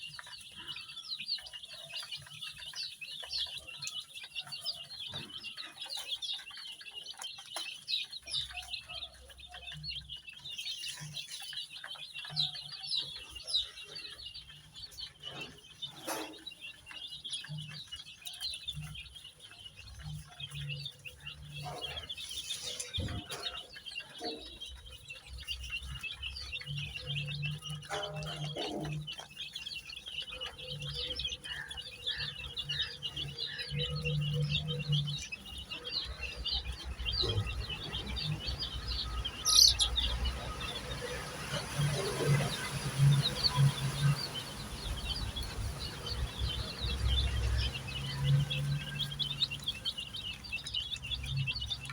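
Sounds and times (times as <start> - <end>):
baby chicks peeping: 0.0 - 51.9.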